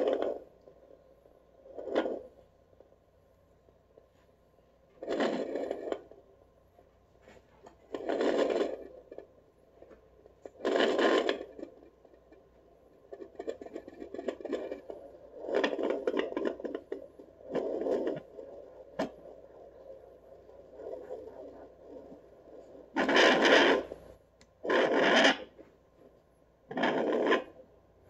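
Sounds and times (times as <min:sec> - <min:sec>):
scratchy doppler speaker noise: 0:13.2 - 0:25.6.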